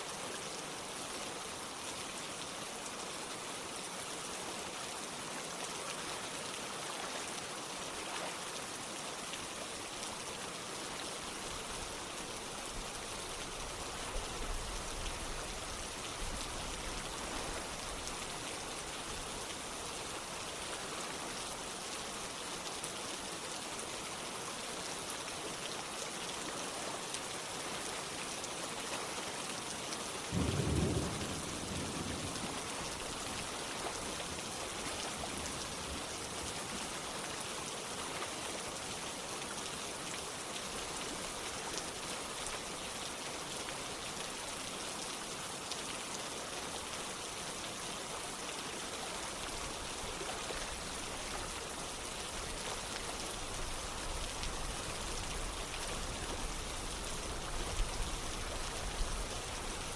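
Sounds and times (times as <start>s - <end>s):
steady rain falling: 0.0s - 59.9s
low rumble of thunder: 30.4s - 32.9s.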